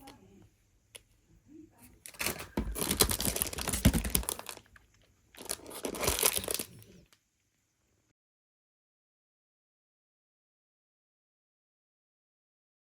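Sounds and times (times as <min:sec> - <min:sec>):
parcel packaging rustling: 0:02.0 - 0:07.1.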